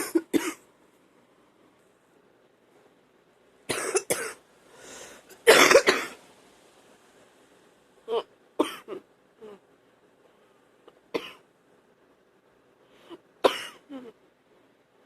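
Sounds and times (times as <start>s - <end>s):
woman coughing wetly: 0.0s - 0.6s, 3.7s - 4.4s, 5.4s - 6.2s, 8.2s - 9.0s, 11.2s - 11.4s, 13.4s - 13.9s
drawn breath: 4.6s - 5.4s.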